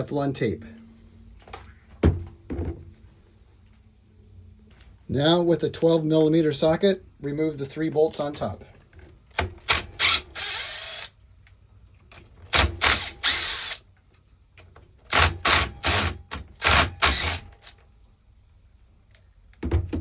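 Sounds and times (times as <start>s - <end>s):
power drill bursts: 9.4s - 11.1s, 12.5s - 13.8s, 15.1s - 17.7s.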